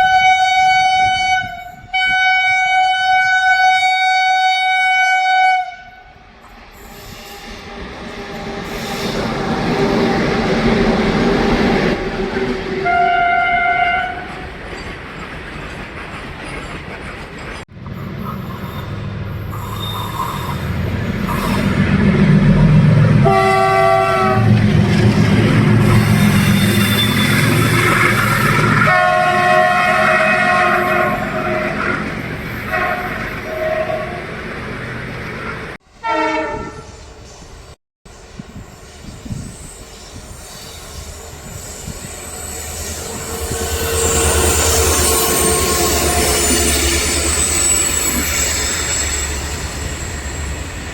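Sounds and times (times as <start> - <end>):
two-tone train horn blasts: 0.0 - 6.2, 11.9 - 14.4, 23.1 - 24.6, 28.8 - 32.0, 32.7 - 34.3, 35.9 - 37.0, 43.0 - 49.0
train wheels clattering on rails: 14.0 - 19.0.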